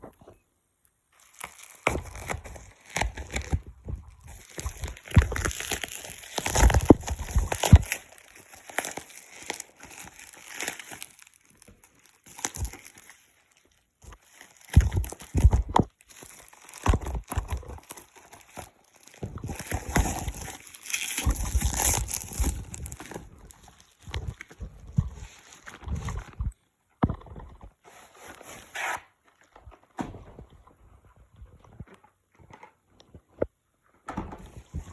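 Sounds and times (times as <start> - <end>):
packaging crinkling and rustling: 1.1 - 26.6.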